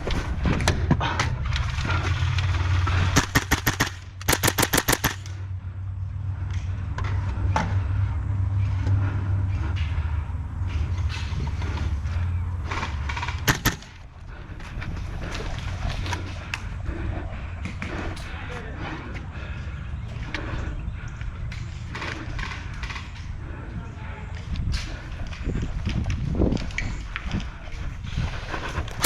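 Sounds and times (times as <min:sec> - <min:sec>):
steady low rumble: 0:00.0 - 0:29.0
airsoft rifle shots: 0:03.1 - 0:05.4, 0:13.2 - 0:14.1.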